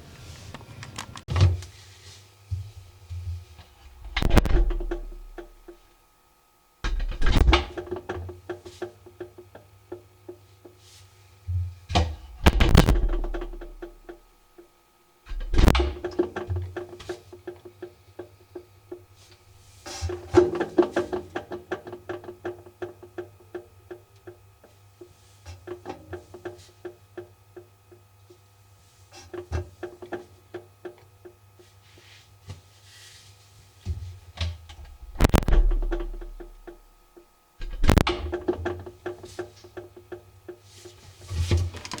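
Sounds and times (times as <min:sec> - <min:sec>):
motor hum: 0:03.7 - 0:07.8, 0:34.8 - 0:38.5
washing machine drum knocking: 0:04.0 - 0:05.8, 0:11.9 - 0:14.3, 0:34.8 - 0:36.9.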